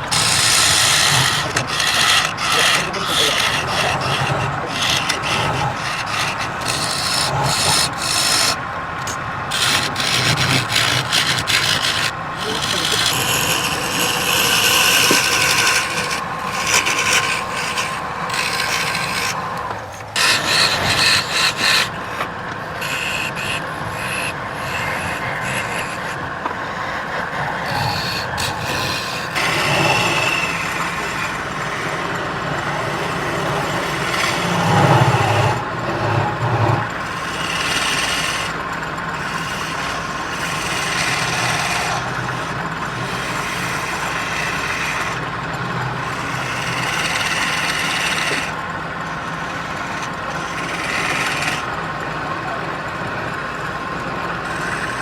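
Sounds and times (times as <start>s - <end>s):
lathe tool scraping wood: 0.0s - 55.0s.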